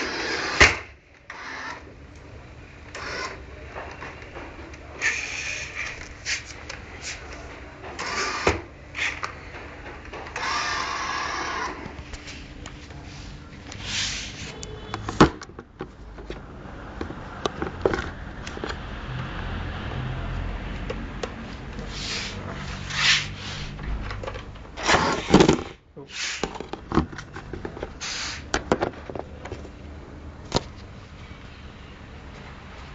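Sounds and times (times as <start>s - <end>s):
toy car motor whirring: 0.0s - 0.6s, 1.3s - 1.9s, 2.9s - 3.4s, 5.0s - 6.5s, 8.0s - 9.2s, 10.4s - 11.9s.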